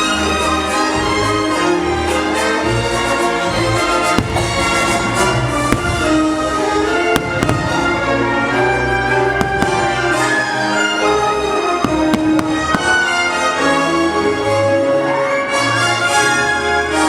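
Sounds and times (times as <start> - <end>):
orchestral music with strings and brass: 0.0 - 17.0
fireworks banging: 3.9 - 8.5, 9.1 - 13.6.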